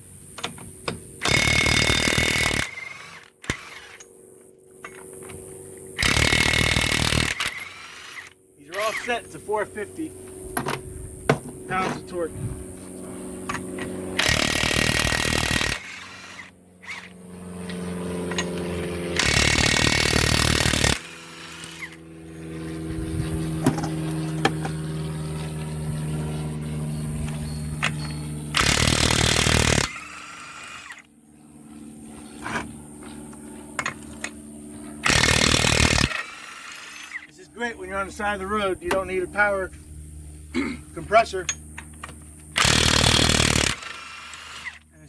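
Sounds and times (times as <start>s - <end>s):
steady low hum: 0.0s - 45.0s
impact wrench hammering: 10.6s - 12.0s, 23.6s - 24.8s.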